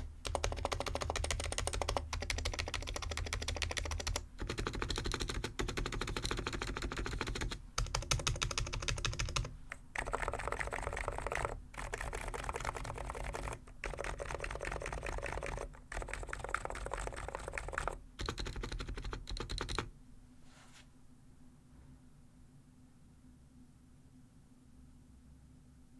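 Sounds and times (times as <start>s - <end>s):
fast keyboard typing: 0.0s - 19.9s.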